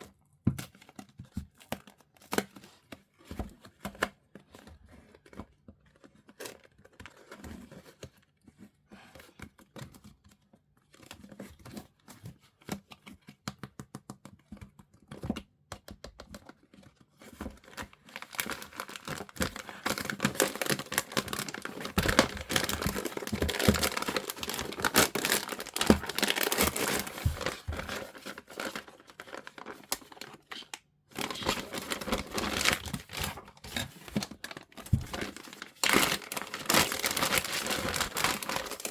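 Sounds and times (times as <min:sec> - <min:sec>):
plastic bags crinkling: 0:17.6 - 0:38.9.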